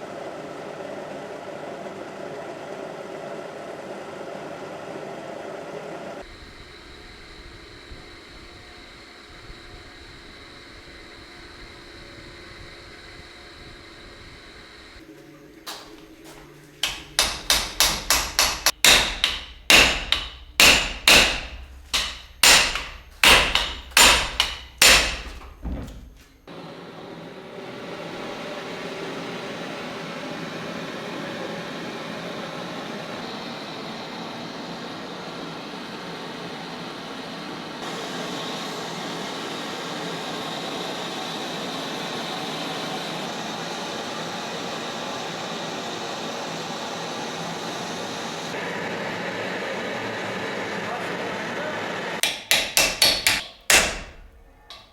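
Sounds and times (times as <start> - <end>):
hammer striking metal: 16.8 - 26.3, 52.2 - 54.9.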